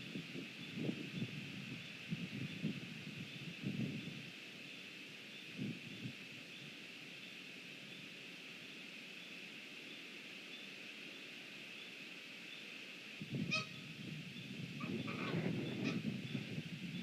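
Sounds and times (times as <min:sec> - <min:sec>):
wind buffeting microphone: 0:00.0 - 0:04.4, 0:05.5 - 0:06.2, 0:13.2 - 0:17.0
large bird crying: 0:13.4 - 0:13.9.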